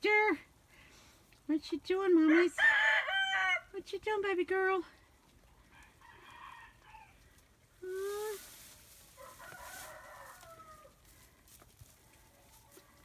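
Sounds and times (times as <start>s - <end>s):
rooster crowing: 2.6s - 3.7s, 6.0s - 7.2s, 9.2s - 11.0s.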